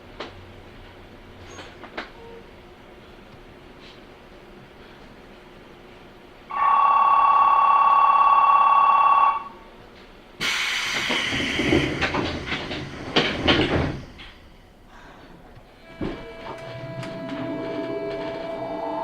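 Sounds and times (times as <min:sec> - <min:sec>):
train doors closing hiss: 0:01.4 - 0:02.2, 0:10.4 - 0:14.7, 0:15.9 - 0:18.4
departure signal tone: 0:06.5 - 0:09.6, 0:15.8 - 0:19.0.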